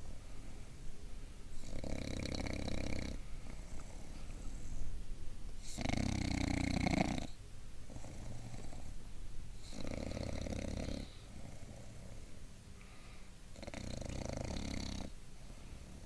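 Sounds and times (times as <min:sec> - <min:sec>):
dog snoring: 0:01.5 - 0:04.9, 0:05.6 - 0:09.0, 0:09.6 - 0:12.4, 0:13.5 - 0:16.0.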